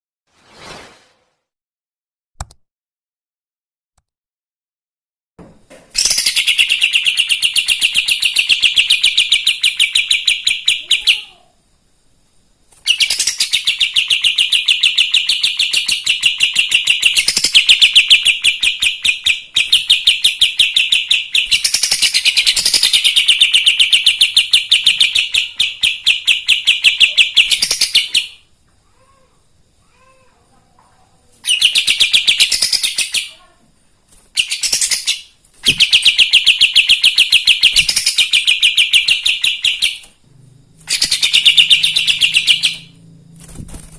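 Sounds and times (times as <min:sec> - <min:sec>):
songbird fast repeated high notes: 0:40.8 - 0:43.0.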